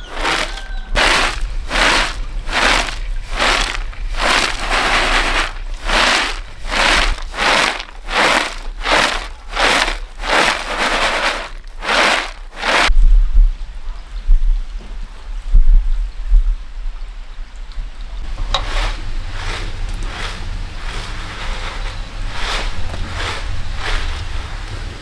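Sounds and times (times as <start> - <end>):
rhythmic scraping strokes: 0.0 - 12.9, 18.5 - 24.7.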